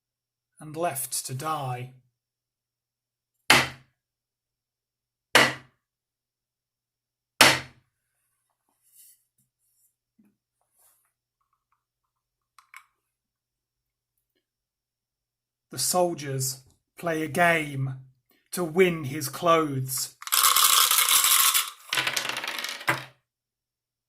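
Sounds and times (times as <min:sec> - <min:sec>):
hammer blows driving nails: 0:03.5 - 0:03.8, 0:05.4 - 0:05.7, 0:07.4 - 0:07.8.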